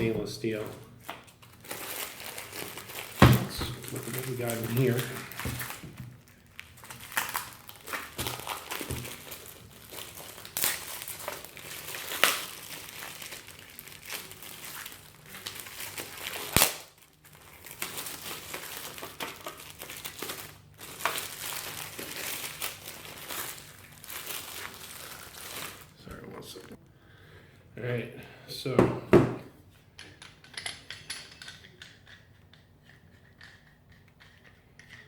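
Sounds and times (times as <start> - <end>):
packaging crinkling and rustling: 0.4 - 26.8.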